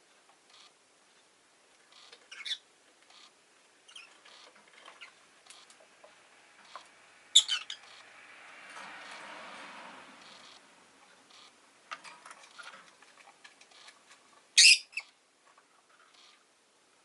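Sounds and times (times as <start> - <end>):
bird chirping: 1.9 - 3.3, 3.9 - 5.6, 6.7 - 8.1, 14.6 - 15.2
sharp bird calls: 7.3 - 8.0, 14.6 - 15.2.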